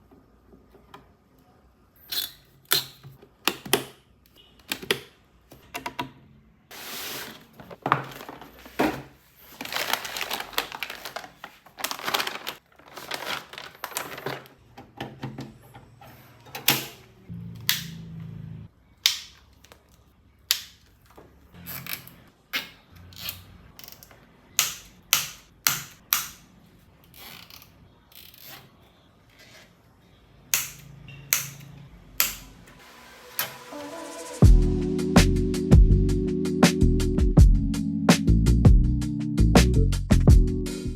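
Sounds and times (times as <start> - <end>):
handling noises: 6.7 - 17.2.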